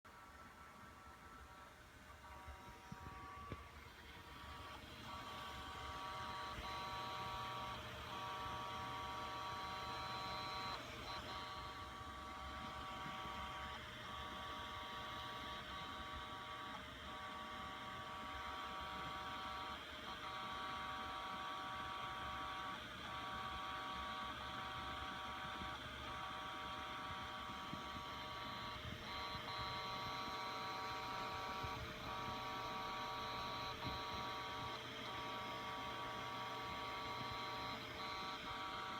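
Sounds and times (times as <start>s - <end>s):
hard drive whine: 0.1s - 38.9s
hard drive head seeking noise: 22.6s - 38.9s.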